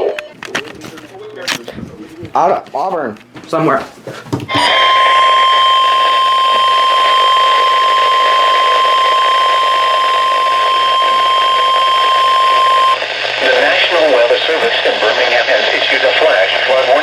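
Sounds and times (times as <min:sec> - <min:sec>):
radio static hiss: 0:00.0 - 0:02.7, 0:05.7 - 0:17.0
steady high-pitched alarm tone: 0:04.5 - 0:14.3.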